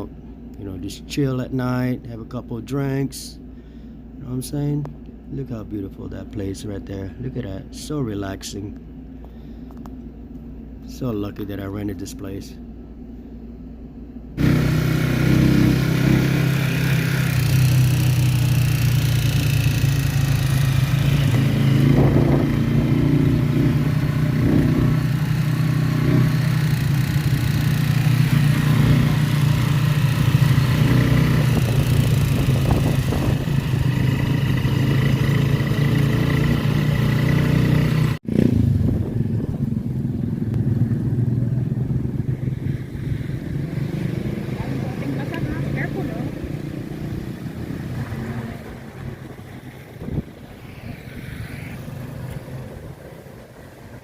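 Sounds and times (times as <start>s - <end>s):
road and wind noise: 0.0s - 54.0s
vehicle engine hum: 0.0s - 54.0s.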